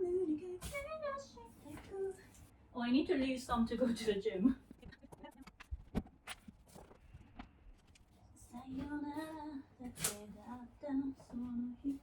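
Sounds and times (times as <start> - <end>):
woman singing softly: 0.0 - 2.4, 8.4 - 12.0.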